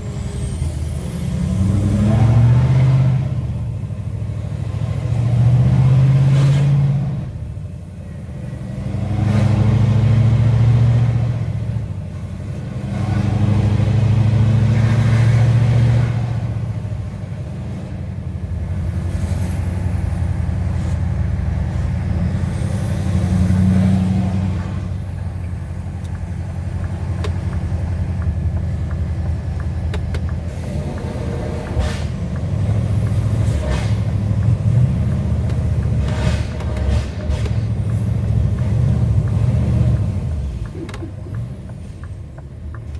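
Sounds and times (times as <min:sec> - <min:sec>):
diesel engine droning: 0:00.0 - 0:42.9.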